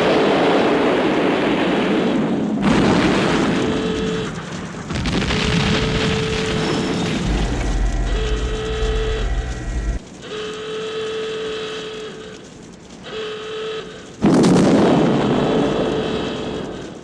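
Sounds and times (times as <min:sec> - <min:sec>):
loud explosion rumbling: 0:00.0 - 0:10.0, 0:14.2 - 0:17.0
horn blasts: 0:03.5 - 0:04.4, 0:05.8 - 0:12.4, 0:13.0 - 0:14.2.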